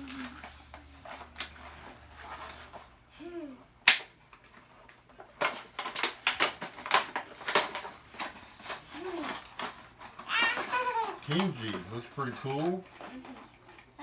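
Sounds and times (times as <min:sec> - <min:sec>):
packaging snapping: 0:03.8 - 0:04.5, 0:05.3 - 0:12.6
crackling plastic clicks: 0:03.8 - 0:14.0.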